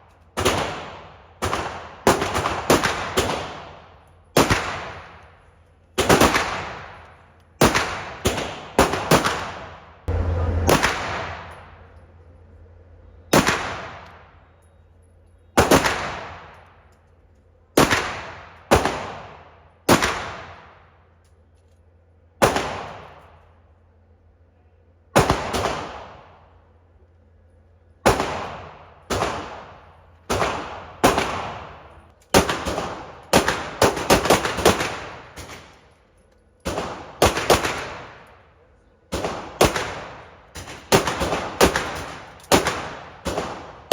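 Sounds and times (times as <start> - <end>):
pistol shots echoing: 0.4 - 5.4, 6.0 - 11.9, 13.3 - 14.4, 15.6 - 16.8, 17.8 - 20.9, 22.4 - 23.2, 25.2 - 26.4, 28.0 - 35.8, 36.6 - 38.4, 39.1 - 43.9.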